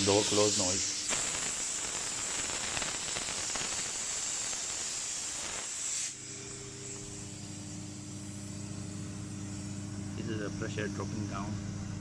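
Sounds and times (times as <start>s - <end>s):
compressed air hissing: 0.0s - 9.8s
steady low hum: 6.2s - 12.0s.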